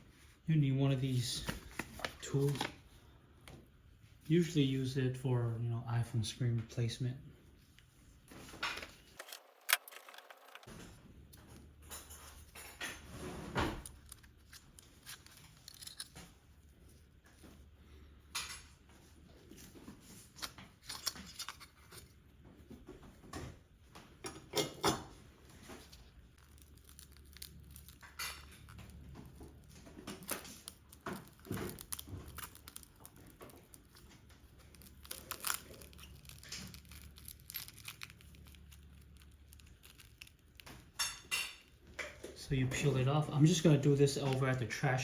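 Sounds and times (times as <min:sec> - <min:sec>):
glass being pried and peeled: 0:26.4 - 0:28.9, 0:30.1 - 0:41.7.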